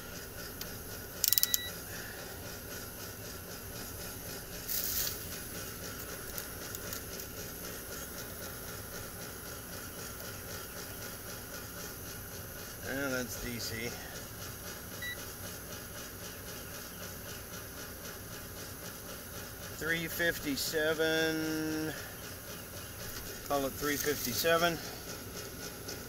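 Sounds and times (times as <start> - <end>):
mechanical unit running: 0.0 - 26.0
faint regular ticking: 0.1 - 16.2, 17.1 - 26.0
sharp electronic beeps: 1.4 - 1.8.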